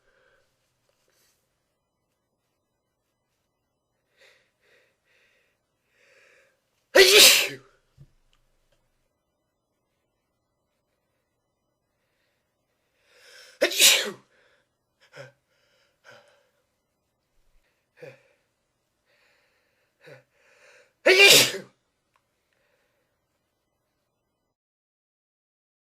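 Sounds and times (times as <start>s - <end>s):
person sneezing: 7.0s - 7.7s, 13.3s - 14.3s, 21.0s - 21.8s.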